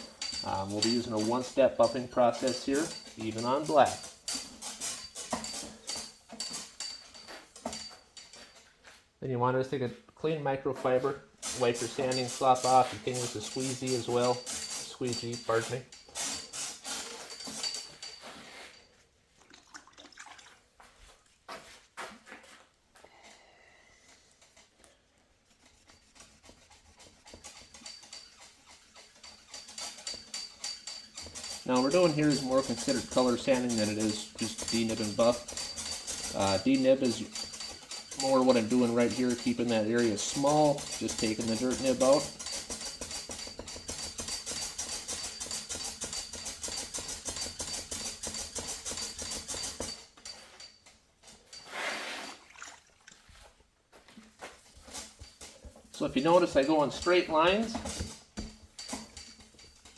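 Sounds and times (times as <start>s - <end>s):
sandpaper rubbing back and forth: 25.5s - 29.6s
sandpaper rasping strokes: 25.5s - 43.4s.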